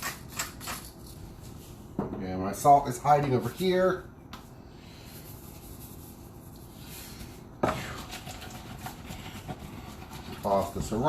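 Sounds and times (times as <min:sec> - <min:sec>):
soft rubbing hiss: 0:04.4 - 0:07.4.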